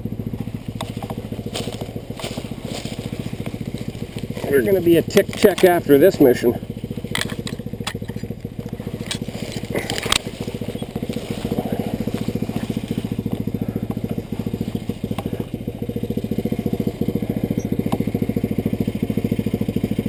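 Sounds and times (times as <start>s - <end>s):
engine idling: 0.0s - 20.0s
sharp clicks and knocks: 0.4s - 1.9s, 5.1s - 5.9s, 7.0s - 11.2s.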